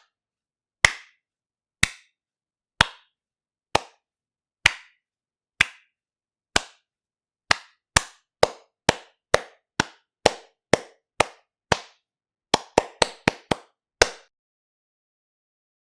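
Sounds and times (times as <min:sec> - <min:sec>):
sharp hand claps: 0:00.8 - 0:01.2, 0:01.8 - 0:02.2, 0:02.8 - 0:03.2, 0:03.8 - 0:04.0, 0:04.6 - 0:05.0, 0:05.6 - 0:05.9, 0:06.6 - 0:06.8, 0:07.5 - 0:14.3.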